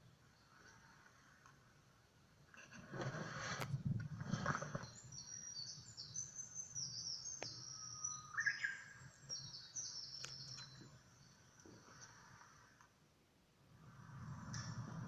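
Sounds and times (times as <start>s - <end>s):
small birds chirping: 4.4s - 12.7s
lower rising bird call: 4.8s - 11.0s.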